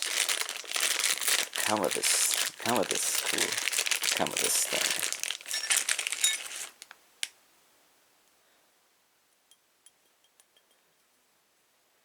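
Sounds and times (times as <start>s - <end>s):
plastic bag crinkling: 0.0s - 7.3s
small metal pieces clinking: 3.4s - 6.8s.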